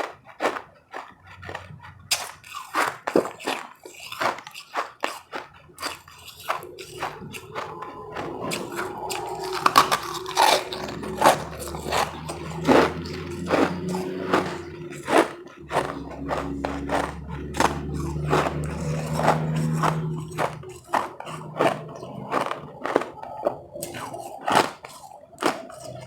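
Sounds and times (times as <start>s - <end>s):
ice crunching while chewed: 0.0s - 26.0s
low steady hum: 6.1s - 24.8s.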